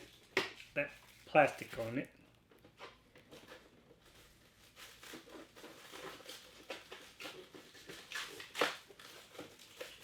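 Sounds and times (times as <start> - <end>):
plastic wrap crinkling: 0.0 - 10.0
plastic ripping: 2.8 - 10.0.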